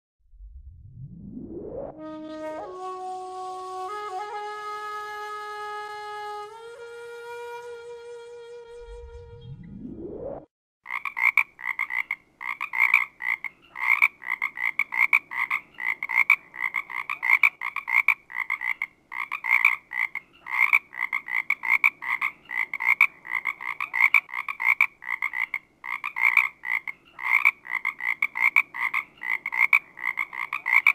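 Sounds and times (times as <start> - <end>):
short rising pitch glide: 0.2 - 4.4, 6.8 - 10.5
frog croaking: 10.9 - 30.9.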